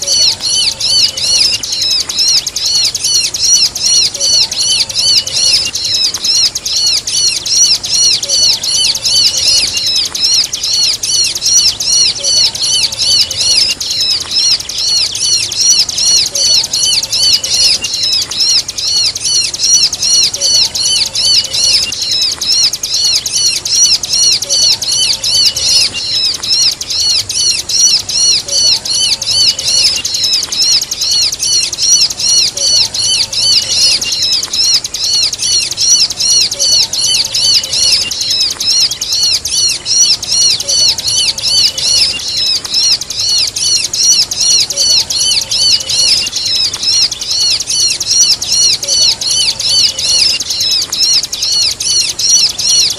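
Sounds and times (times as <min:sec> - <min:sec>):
bird chirping song: 0:00.0 - 0:52.9
squeaky bird calls: 0:00.0 - 0:52.9.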